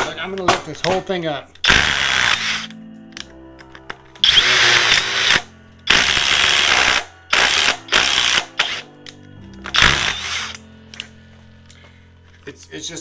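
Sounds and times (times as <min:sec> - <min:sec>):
cordless impact driver bursts: 0:01.6 - 0:02.7, 0:04.2 - 0:08.8, 0:09.7 - 0:10.6.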